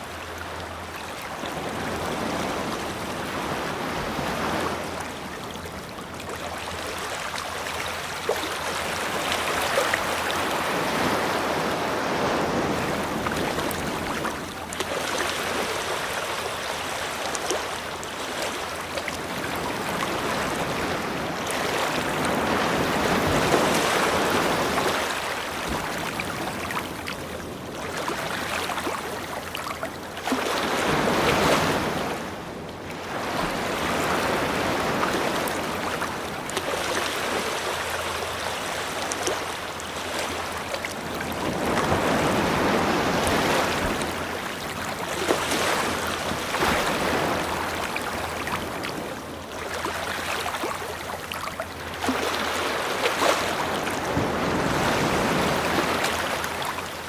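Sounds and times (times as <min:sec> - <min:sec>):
ocean waves breaking on beach: 0:00.0 - 0:57.0.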